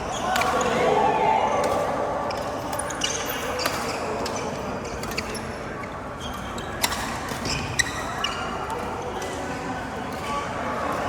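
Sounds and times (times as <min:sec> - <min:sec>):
shoes squeaking on court: 0:02.3 - 0:09.4.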